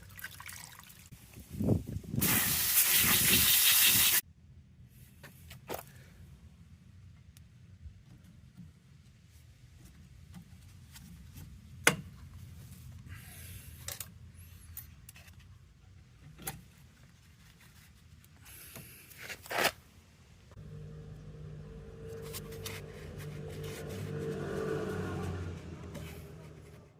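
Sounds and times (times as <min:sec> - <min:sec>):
steady low hum: 0:20.6 - 0:24.3
scraping of filter parts: 0:22.0 - 0:24.6.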